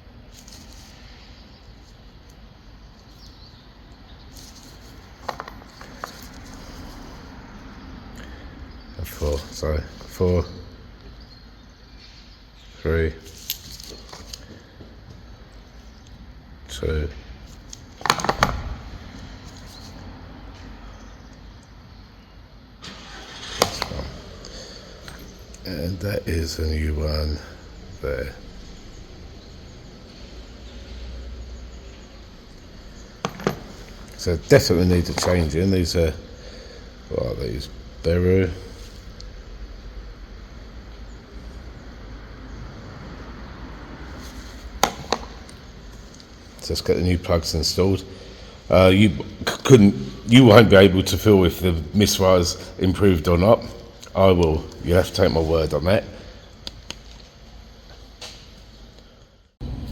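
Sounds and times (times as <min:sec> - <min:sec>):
low background hum: 0:00.0 - 0:59.9
tools clicking and knocking: 0:04.4 - 0:06.6, 0:17.7 - 0:18.6, 0:33.2 - 0:34.2, 0:44.8 - 0:45.6.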